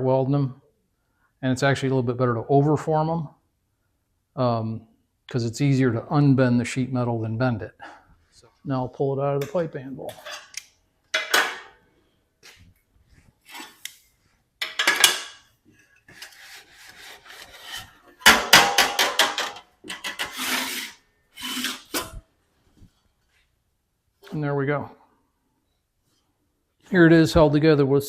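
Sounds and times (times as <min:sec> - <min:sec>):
steel scraping and rubbing: 0:13.4 - 0:13.9, 0:16.0 - 0:18.2, 0:19.9 - 0:22.2.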